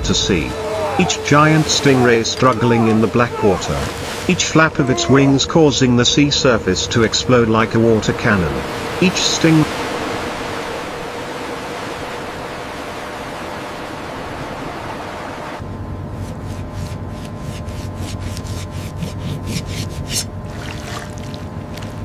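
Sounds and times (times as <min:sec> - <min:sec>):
rushing sea water: 0:00.0 - 0:15.6, 0:20.4 - 0:22.0
boat engine drone: 0:00.0 - 0:16.2.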